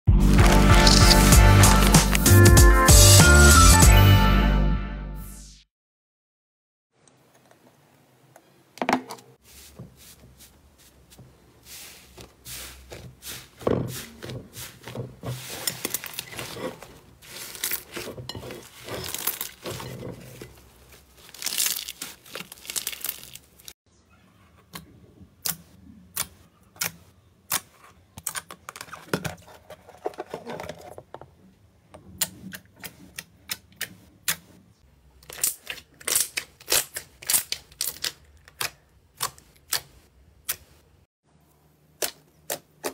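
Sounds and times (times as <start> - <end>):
hands squishing slime: 21.0 - 23.6.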